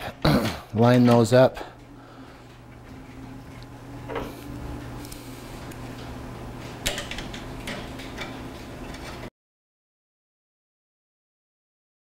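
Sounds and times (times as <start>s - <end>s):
steady low hum: 0.0s - 9.3s.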